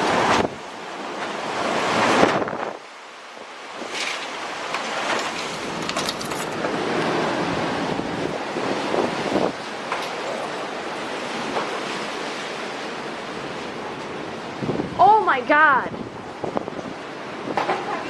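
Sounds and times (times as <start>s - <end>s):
strong wind buffeting microphone: 1.9s - 2.8s, 5.4s - 9.9s, 14.2s - 17.7s.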